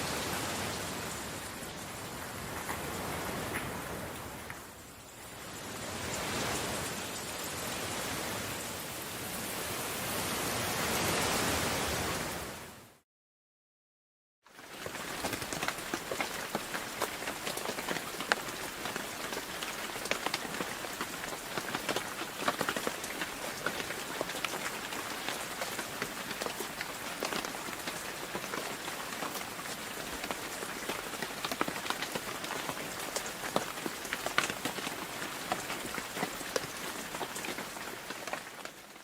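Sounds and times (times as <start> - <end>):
raindrops hitting close by: 0.0 - 10.0, 14.5 - 39.0
rain hissing: 14.6 - 39.0.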